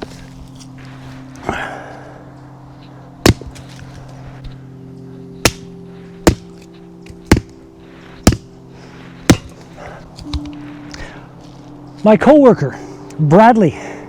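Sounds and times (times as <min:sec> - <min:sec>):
wood chopping strikes: 0:03.2 - 0:04.6, 0:05.4 - 0:07.6, 0:08.2 - 0:08.5, 0:09.3 - 0:10.6.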